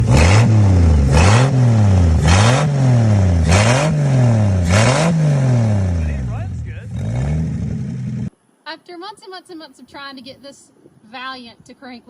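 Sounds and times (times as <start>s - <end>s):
car engine revving: 0.0s - 8.3s.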